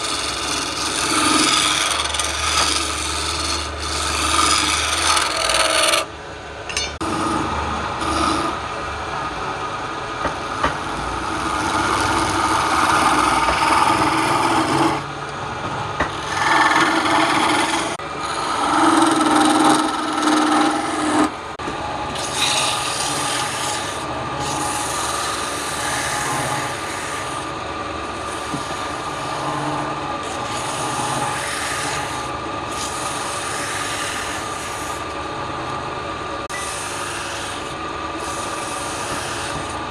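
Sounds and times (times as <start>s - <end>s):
tool rasping on spinning wood: 0.0s - 6.1s, 7.0s - 8.6s, 10.2s - 15.1s, 16.0s - 35.2s, 36.4s - 39.9s.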